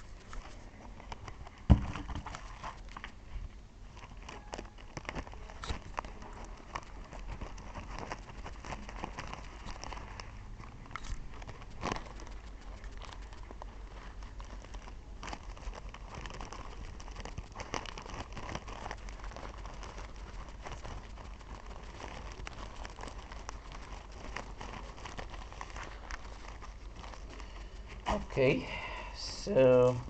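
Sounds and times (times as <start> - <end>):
paper packaging crinkling: 0.0 - 30.0.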